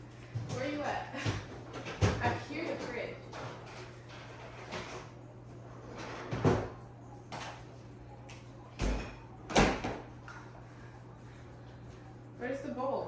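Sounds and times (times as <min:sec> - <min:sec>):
kitchen knocks and thumps: 0:00.3 - 0:02.5.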